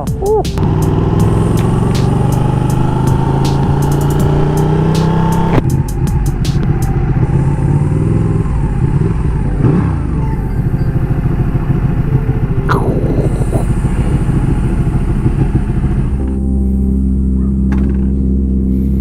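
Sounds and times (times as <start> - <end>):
steady music: 0.0 - 19.0
motorcycle engine idling: 0.6 - 12.5.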